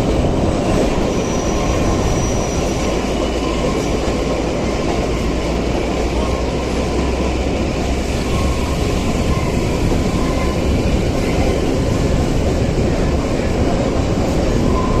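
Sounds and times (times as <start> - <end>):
train wheel and carriage noise: 0.0 - 15.0.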